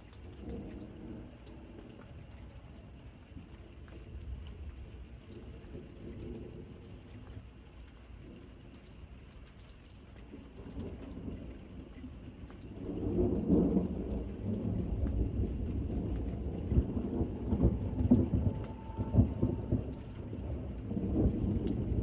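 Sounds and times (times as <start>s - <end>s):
rain hissing: 0.0s - 22.0s
thunder rumbling and cracking: 0.1s - 2.4s, 10.3s - 22.0s.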